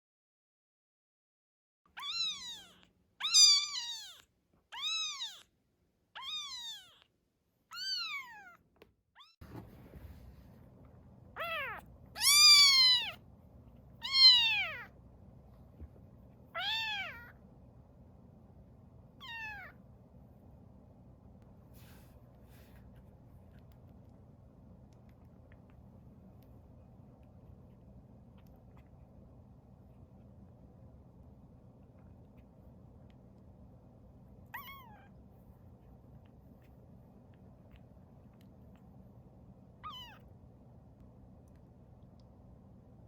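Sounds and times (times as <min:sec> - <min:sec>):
kitten meowing: 0:01.9 - 0:05.5, 0:06.2 - 0:07.1, 0:07.7 - 0:08.6, 0:09.2 - 0:09.4, 0:11.4 - 0:13.2, 0:14.0 - 0:14.9, 0:16.5 - 0:17.4, 0:19.2 - 0:19.8, 0:34.5 - 0:35.2, 0:39.8 - 0:40.3
faint low background noise: 0:01.9 - 0:43.0.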